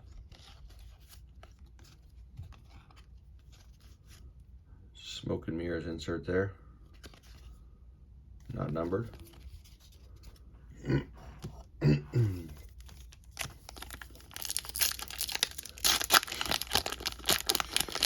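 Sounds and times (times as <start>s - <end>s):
wrapper tearing and crinkling: 12.8s - 18.0s.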